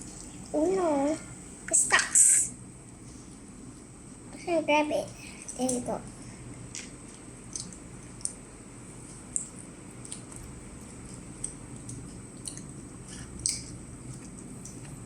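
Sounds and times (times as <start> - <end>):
child chewing food: 5.2 - 15.0
smacking mouth clicks: 6.7 - 8.4, 11.4 - 14.8.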